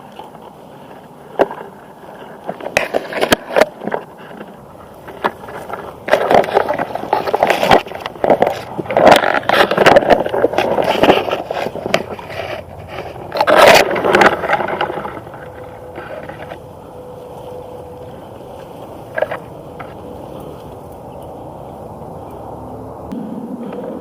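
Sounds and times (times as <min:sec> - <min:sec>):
scraping and rustling: 0:00.0 - 0:21.0.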